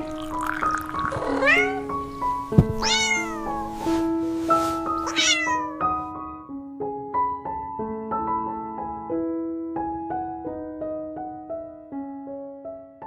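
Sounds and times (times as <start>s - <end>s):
soft piano music: 0.0s - 13.0s
cat meowing: 1.2s - 3.8s, 4.7s - 5.9s
short thump: 2.5s - 5.1s.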